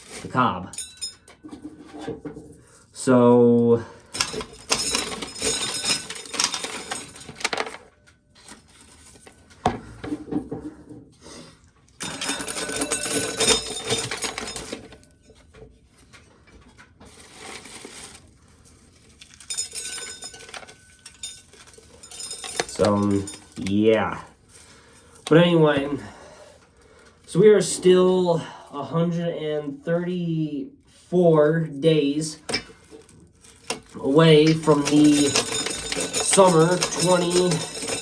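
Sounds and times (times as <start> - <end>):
kernels rattling into plastic pail: 4.1 - 7.9, 12.0 - 15.1, 17.1 - 24.0, 32.2 - 38.0
corn sheller stripping corn: 21.5 - 24.0, 32.3 - 38.0.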